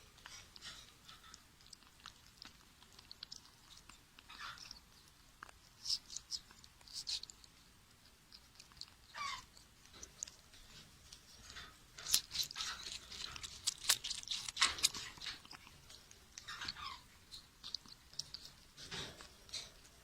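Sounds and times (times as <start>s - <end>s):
parrot chewing grapes: 0.0s - 20.0s
parrot squeak: 9.1s - 9.5s, 16.4s - 17.0s.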